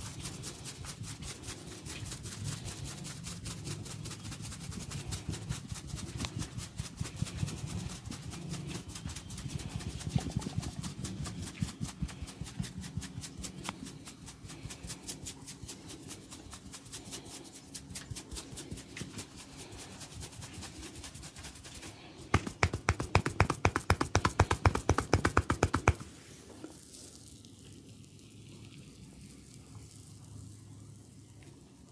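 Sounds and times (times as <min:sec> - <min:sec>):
hands tapping and patting head: 0:22.3 - 0:26.1.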